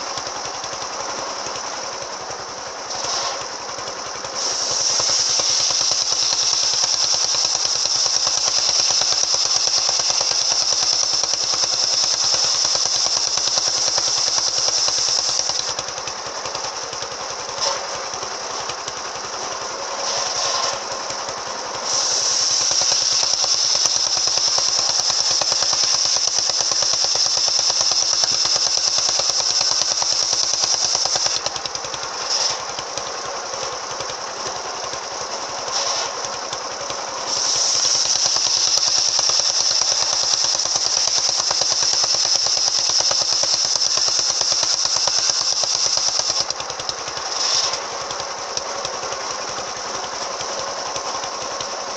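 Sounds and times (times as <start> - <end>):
circular saw cutting timber: 0.0 - 51.9
saw running unloaded: 0.0 - 51.9.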